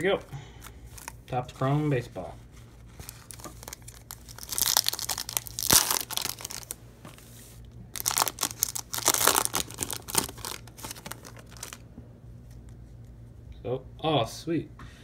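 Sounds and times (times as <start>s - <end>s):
wrapper tearing and crinkling: 0.9s - 1.2s, 2.9s - 6.8s, 7.9s - 11.8s.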